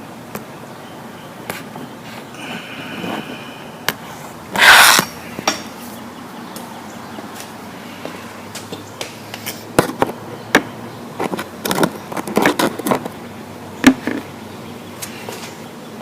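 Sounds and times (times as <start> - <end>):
bike clicks and knocks: 8.5 - 13.2.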